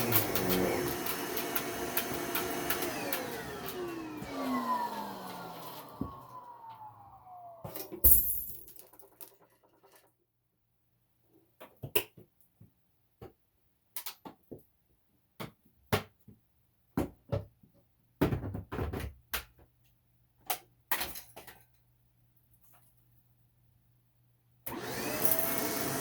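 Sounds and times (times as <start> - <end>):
knocks and clicks of hard objects: 15.4 - 19.8.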